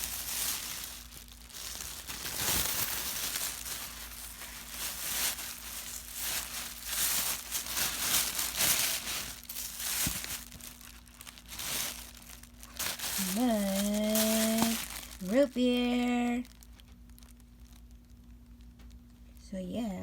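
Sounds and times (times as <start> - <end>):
packaging crinkling: 0.0 - 19.4.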